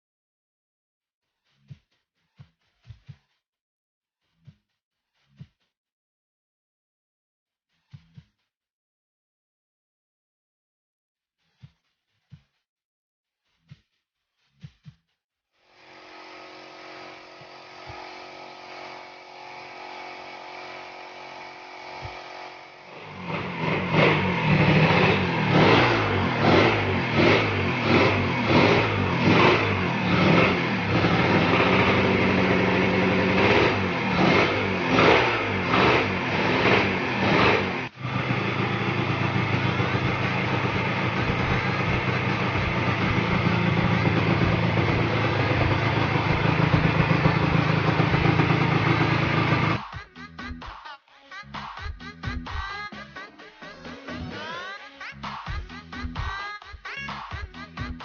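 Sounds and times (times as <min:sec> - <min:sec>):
high-revving engine: 0:15.7 - 0:50.0
motorcycle engines revving: 0:15.8 - 0:49.9
motorcycle engine humming: 0:19.8 - 0:49.8.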